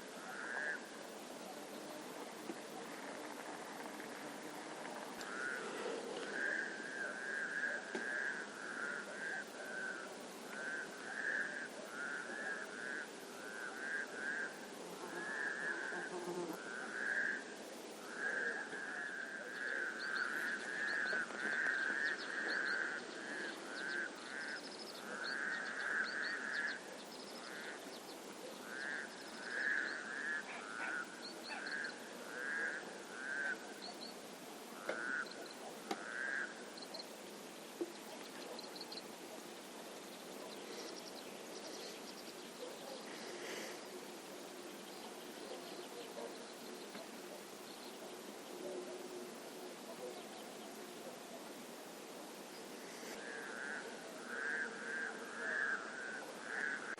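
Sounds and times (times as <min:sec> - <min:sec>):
frogs trilling in chorus: 0:00.0 - 0:01.3, 0:02.7 - 0:37.2, 0:52.6 - 0:56.9
small birds chirping: 0:36.7 - 0:48.7.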